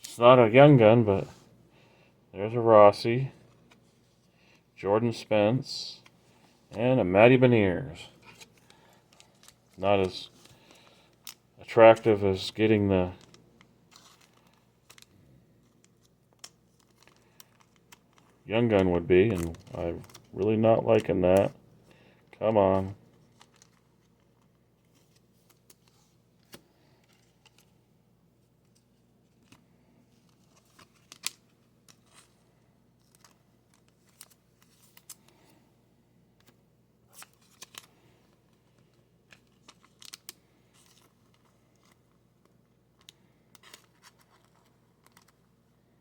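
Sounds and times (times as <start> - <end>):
trading cards rustling and clicking: 8.0 - 21.6, 22.2 - 27.8, 28.5 - 35.6, 36.4 - 45.6.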